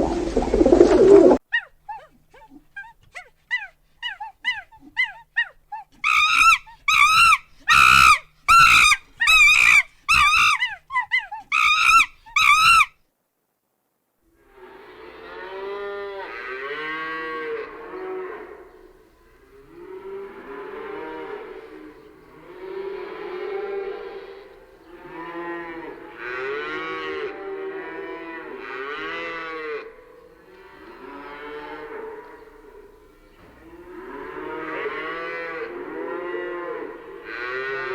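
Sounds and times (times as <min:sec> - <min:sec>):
eagle shrill screams: 0:06.0 - 0:10.7, 0:11.5 - 0:12.9
cattle mooing: 0:33.6 - 0:37.9.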